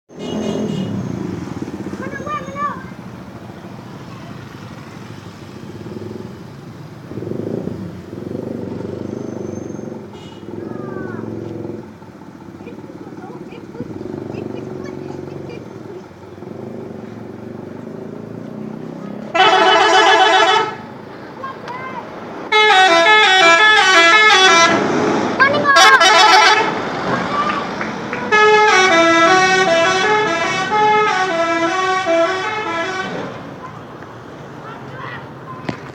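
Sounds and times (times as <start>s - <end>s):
musical bus horn: 0.1s - 1.0s, 10.1s - 10.5s, 19.3s - 20.9s, 22.5s - 24.9s, 25.6s - 26.8s, 28.2s - 33.5s
bus engine throbbing: 0.1s - 35.9s.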